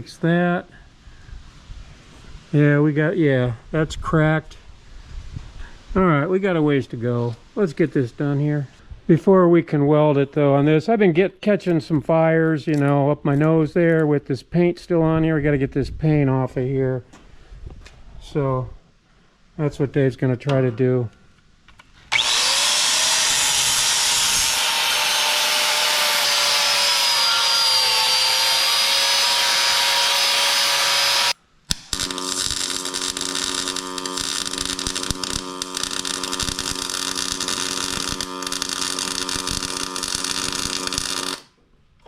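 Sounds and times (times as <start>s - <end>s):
power grinder grinding steel: 22.1s - 41.5s
welder buzzing and crackling: 22.1s - 41.6s.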